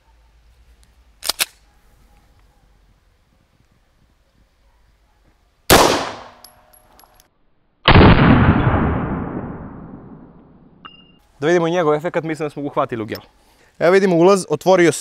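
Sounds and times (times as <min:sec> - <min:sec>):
pistol shots: 0:05.7 - 0:06.5, 0:07.9 - 0:09.5.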